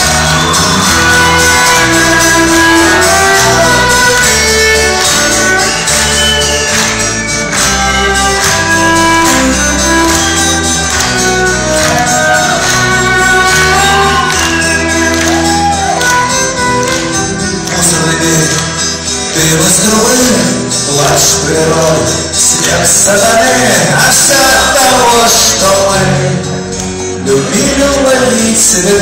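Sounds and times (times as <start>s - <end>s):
drum beats: 0.0s - 20.0s
bass line: 0.0s - 29.0s
sustained melody with sliding notes: 0.0s - 29.0s.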